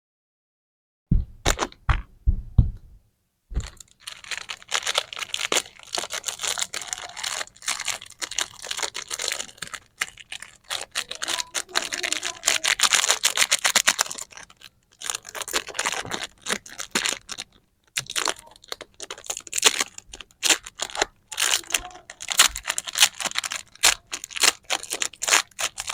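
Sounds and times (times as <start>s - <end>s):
soft knocks: 1.1s - 3.8s
candy wrappers crinkling: 1.5s - 2.1s, 3.5s - 25.9s.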